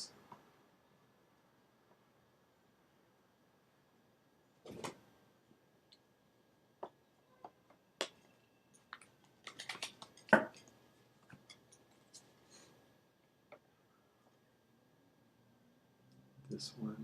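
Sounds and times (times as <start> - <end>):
cards clicking and tapping: 8.0 - 12.2.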